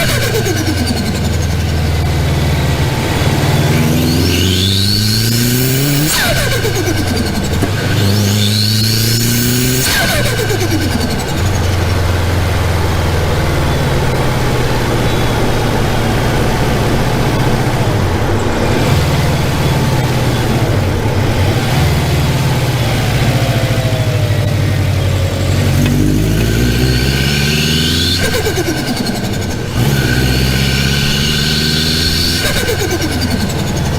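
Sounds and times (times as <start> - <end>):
car engine idling: 0.0 - 33.9
car engine revving: 0.0 - 33.9
turbo whistle and flutter: 3.1 - 12.1, 22.3 - 33.9.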